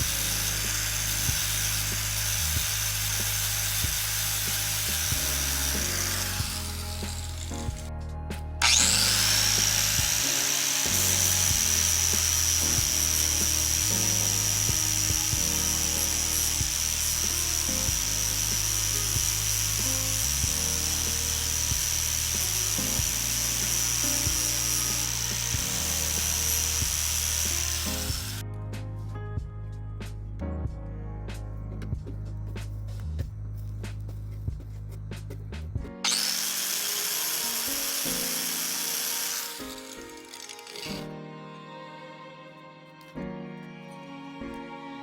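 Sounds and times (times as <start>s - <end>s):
angle grinder grinding metal: 0.0s - 7.9s, 8.6s - 28.4s, 36.0s - 41.1s
background music with bass line: 0.0s - 36.1s.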